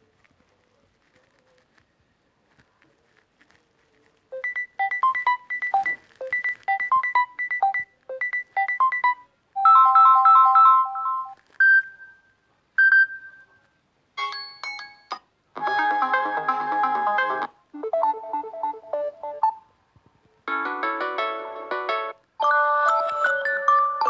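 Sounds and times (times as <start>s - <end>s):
ringtone melody: 4.4s - 11.4s, 14.2s - 19.7s, 20.5s - 24.0s.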